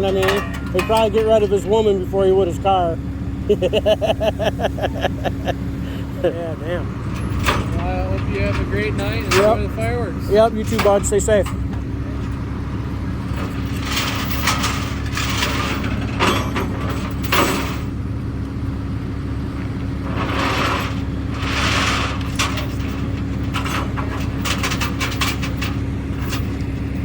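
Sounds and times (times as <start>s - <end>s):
scraping and rustling: 0.0s - 2.7s, 13.2s - 18.0s, 19.8s - 27.0s
vehicle engine idling: 0.0s - 27.0s.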